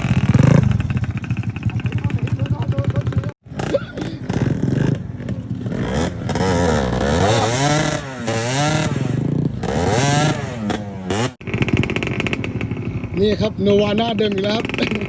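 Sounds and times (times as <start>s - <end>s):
motorcycle engine revving: 0.0s - 15.0s
clatter: 10.6s - 13.2s.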